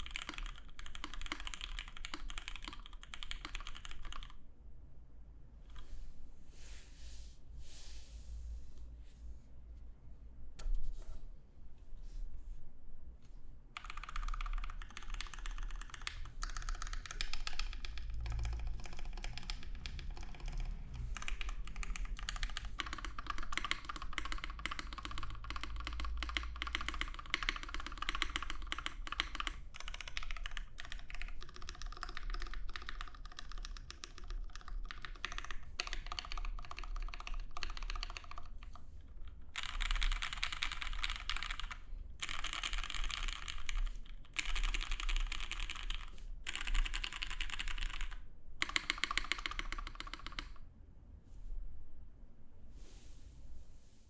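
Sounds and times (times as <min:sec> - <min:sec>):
mechanical keyboard typing: 0:00.0 - 0:04.4, 0:13.8 - 0:50.6.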